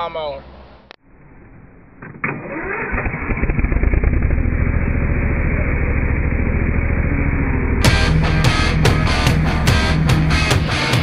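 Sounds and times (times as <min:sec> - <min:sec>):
lawn mower engine running: 0:02.3 - 0:10.8.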